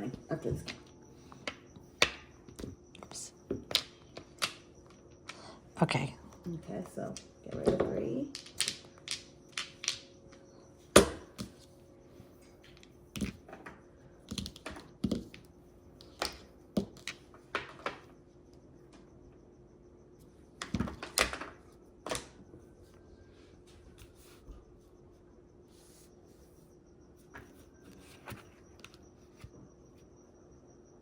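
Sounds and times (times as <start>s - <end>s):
mahjong tiles clacking: 8.2s - 10.4s.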